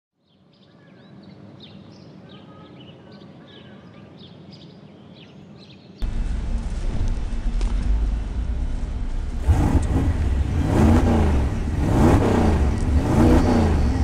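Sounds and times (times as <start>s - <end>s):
low background rumble: 6.0s - 14.0s.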